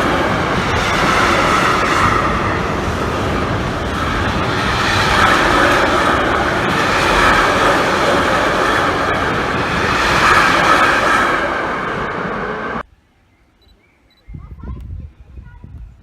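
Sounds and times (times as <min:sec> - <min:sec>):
train wheels rolling on rails: 0:00.0 - 0:12.9.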